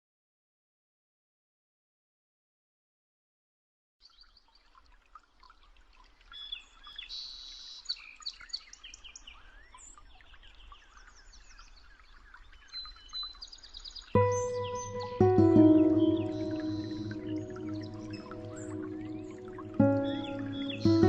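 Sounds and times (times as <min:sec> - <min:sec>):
songbirds chirping and calling: 0:06.2 - 0:21.0.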